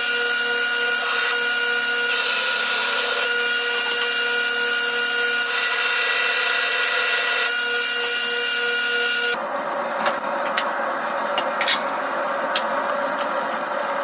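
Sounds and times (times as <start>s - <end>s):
power tool whining: 0.0s - 9.4s.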